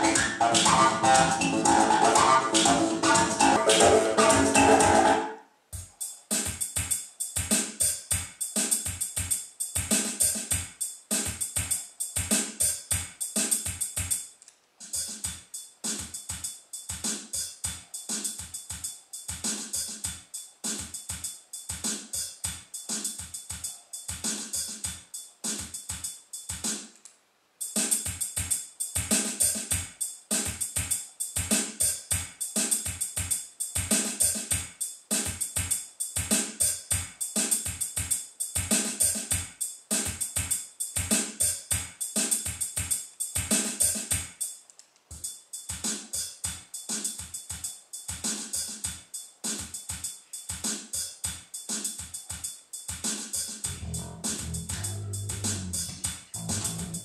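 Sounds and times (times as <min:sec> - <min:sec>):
drum-led instrumental music: 0:00.0 - 0:27.0, 0:27.6 - 0:57.0.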